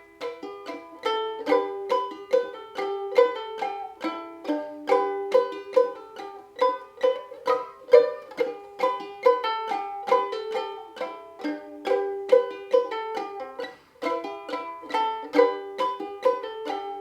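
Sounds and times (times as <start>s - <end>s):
ukulele played clawhammer style: 0.0s - 17.0s.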